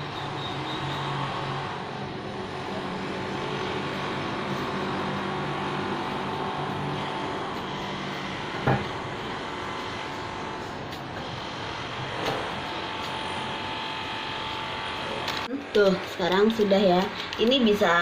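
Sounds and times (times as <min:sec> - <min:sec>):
machine humming and rushing: 0:00.0 - 0:15.5.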